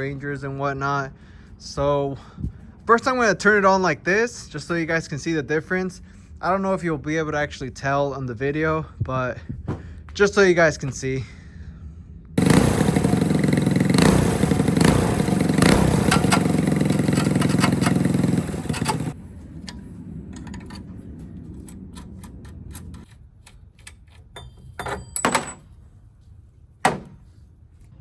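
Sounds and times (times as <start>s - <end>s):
small engine running loud: 12.4s - 19.2s.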